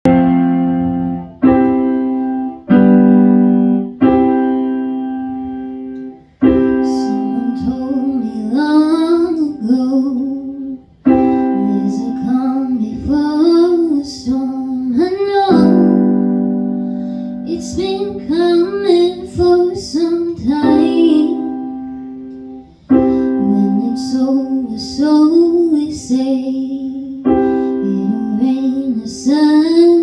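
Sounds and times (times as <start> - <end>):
keyboard chords ringing: 0.0 - 30.0
person singing: 6.6 - 16.5, 17.4 - 21.9, 23.1 - 30.0.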